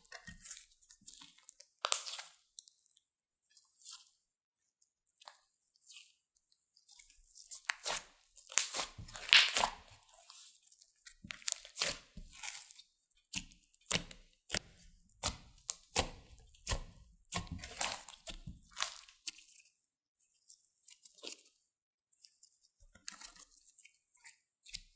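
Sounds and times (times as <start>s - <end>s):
slime squished by hand: 0.3s - 2.4s, 7.6s - 10.0s, 11.3s - 19.4s.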